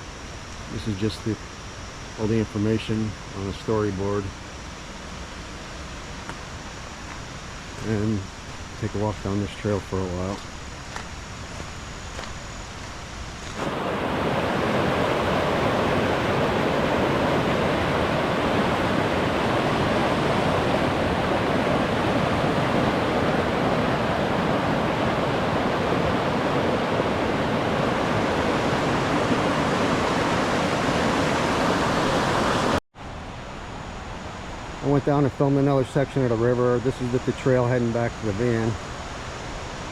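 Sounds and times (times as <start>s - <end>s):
outdoor hiss: 0.0s - 39.9s
river rapids rushing: 13.5s - 32.8s.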